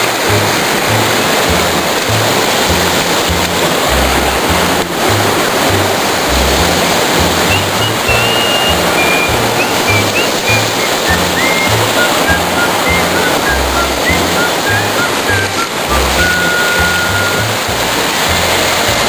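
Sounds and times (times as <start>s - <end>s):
background music with bass line: 0.0s - 19.0s
waterfall rushing: 0.0s - 19.0s.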